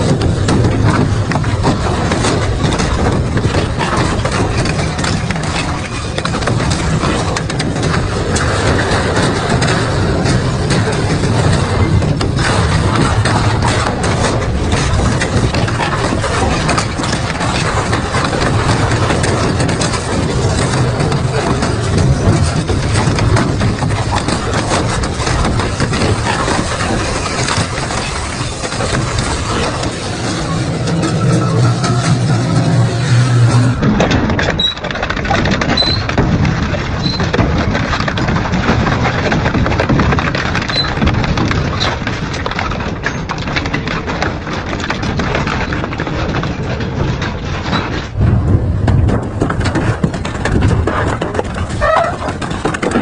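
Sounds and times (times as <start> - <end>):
metal cracking and crunching: 0.0 - 53.0
metal shredder drone: 0.0 - 53.0
high squeaks: 35.7 - 36.1, 51.8 - 52.3.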